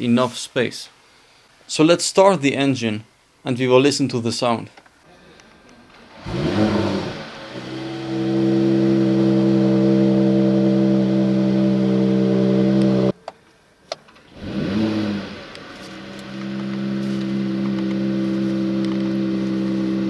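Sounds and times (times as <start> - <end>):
car engine starting and idling: 5.8 - 13.2, 13.9 - 20.0.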